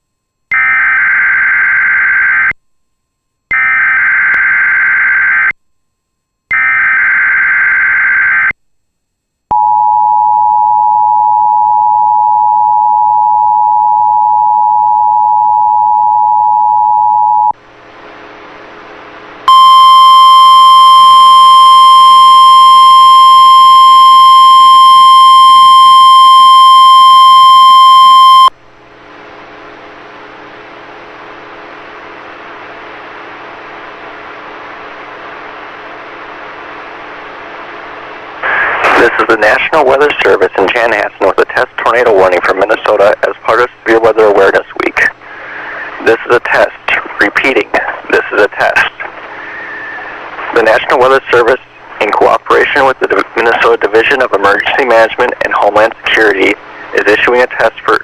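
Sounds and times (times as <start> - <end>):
two-tone attention signal: 19.5 - 28.5
radio hiss: 38.2 - 58.0.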